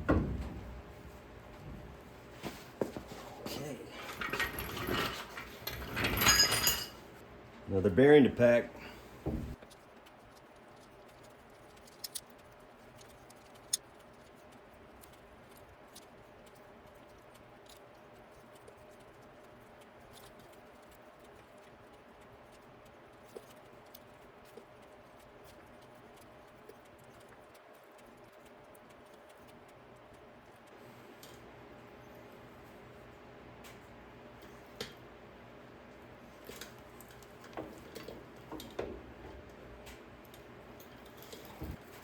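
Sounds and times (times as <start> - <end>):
low room hum: 0.0 - 42.0
faint clicks and knocks of tools: 36.4 - 42.0.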